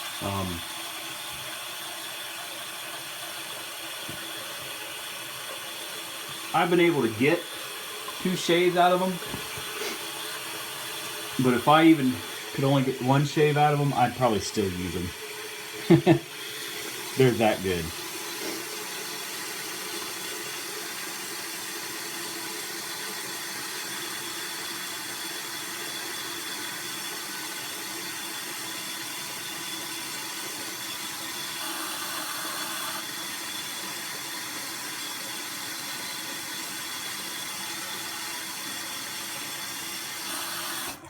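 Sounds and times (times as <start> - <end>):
tap running into sink: 4.0 - 4.8, 9.2 - 11.3.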